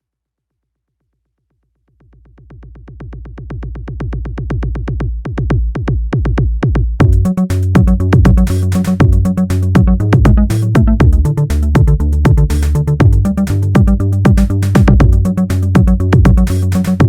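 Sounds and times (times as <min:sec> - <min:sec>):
drum machine hits dropping in pitch: 0:05.3 - 0:17.0
electronic music with bass notes: 0:07.0 - 0:17.0.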